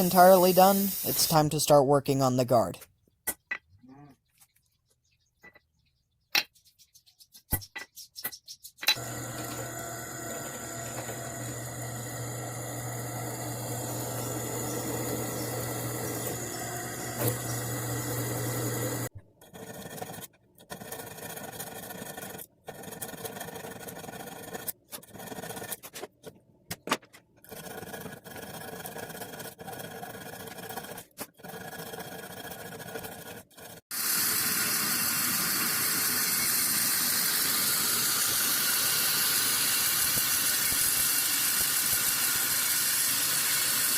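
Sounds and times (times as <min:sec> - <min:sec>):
motor-driven tool humming: 0:09.0 - 0:19.1, 0:33.9 - 0:43.9.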